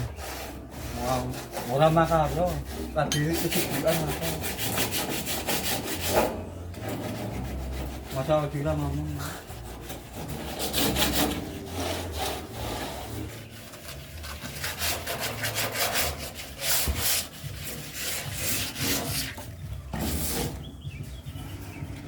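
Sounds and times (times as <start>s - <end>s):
hand tool rubbing strokes: 0.0s - 6.3s.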